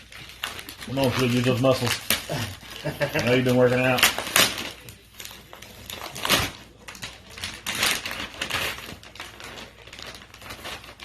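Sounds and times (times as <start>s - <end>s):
packaging being torn open: 0.0s - 11.0s.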